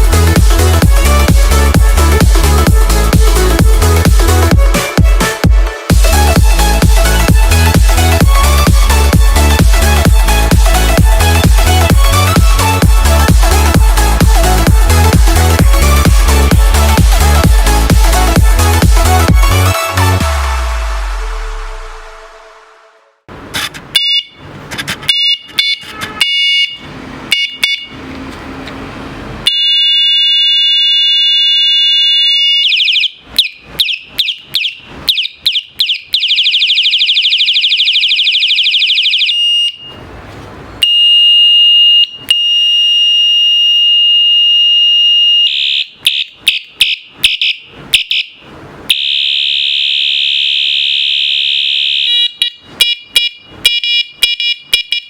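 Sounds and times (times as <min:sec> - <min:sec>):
electric bike horn beeps and tones: 0:23.9 - 0:28.0, 0:29.4 - 0:40.1, 0:40.8 - 0:55.0.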